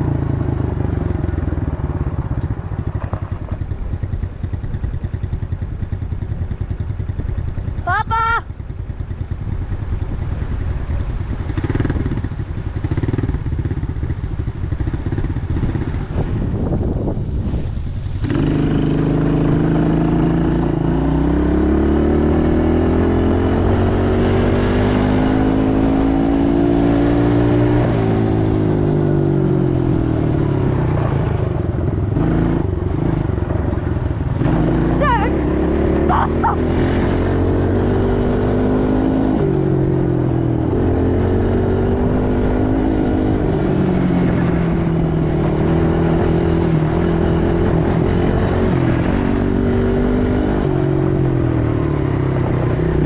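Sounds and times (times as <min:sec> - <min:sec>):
atv engine running: 0:00.0 - 0:53.0.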